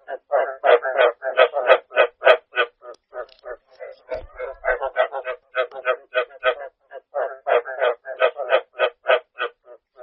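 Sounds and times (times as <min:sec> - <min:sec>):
frogs croaking: 0:00.0 - 0:10.0.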